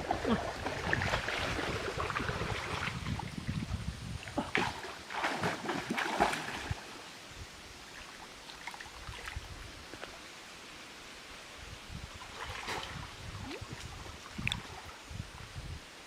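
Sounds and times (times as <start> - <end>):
water splashing: 0.0 - 7.0, 12.2 - 15.0.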